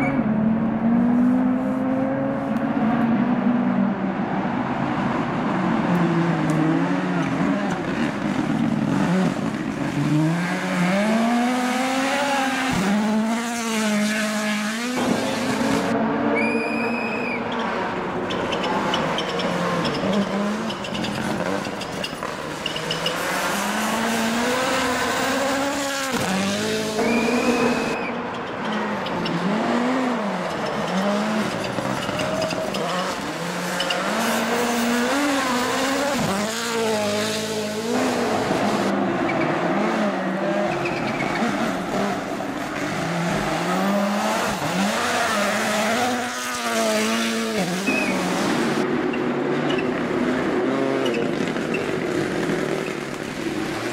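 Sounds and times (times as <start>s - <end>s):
rally car engines revving: 0.0s - 53.9s.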